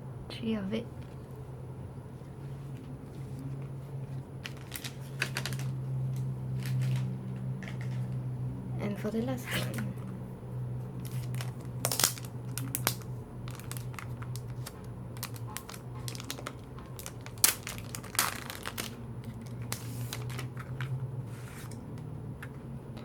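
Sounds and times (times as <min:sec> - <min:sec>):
steady low hum: 0:00.0 - 0:23.0
packaging crinkling and rustling: 0:02.7 - 0:08.2, 0:11.0 - 0:21.0.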